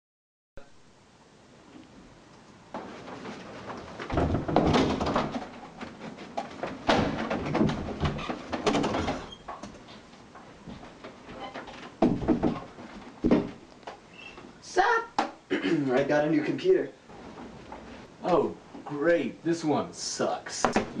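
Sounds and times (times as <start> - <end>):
rustling: 1.6 - 14.6, 17.0 - 19.0
knocks and thumps: 2.7 - 14.5, 20.6 - 21.0.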